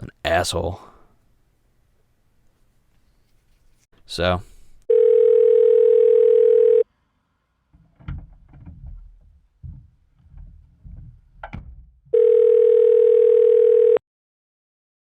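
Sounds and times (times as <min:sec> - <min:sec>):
telephone ringback tone: 0:04.9 - 0:06.8, 0:12.1 - 0:14.0.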